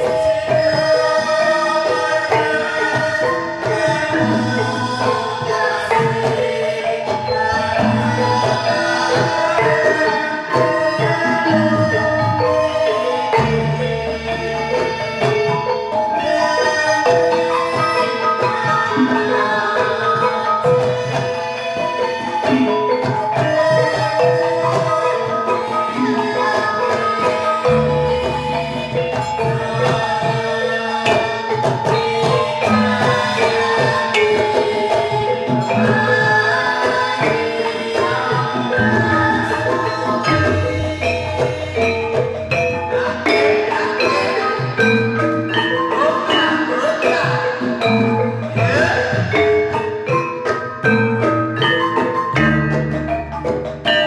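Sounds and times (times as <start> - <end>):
drums: 0.0 - 54.0
gamelan metallophones: 0.0 - 54.0.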